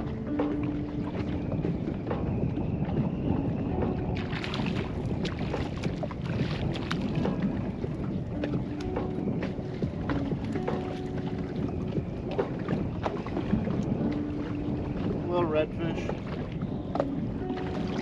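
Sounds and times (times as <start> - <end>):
wind rumbling on microphone: 0.0 - 18.0.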